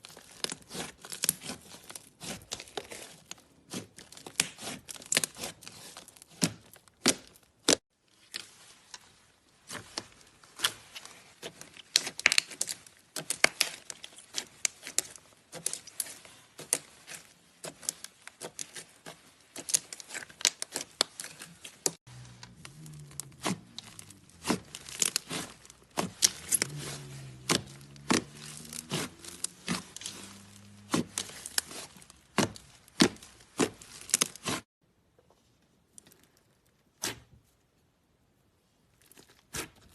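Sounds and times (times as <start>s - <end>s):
slime crackling and popping: 11.4s - 34.6s.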